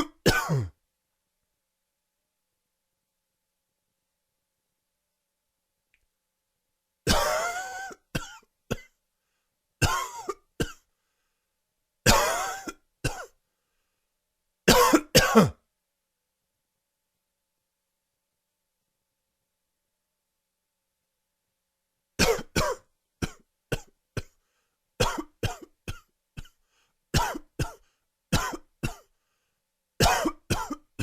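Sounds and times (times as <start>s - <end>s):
man coughing: 0.0s - 0.8s, 7.1s - 8.9s, 9.8s - 10.8s, 12.1s - 13.4s, 14.7s - 15.6s, 22.2s - 24.4s, 25.0s - 26.6s, 27.2s - 27.8s, 28.4s - 29.1s, 30.0s - 31.0s.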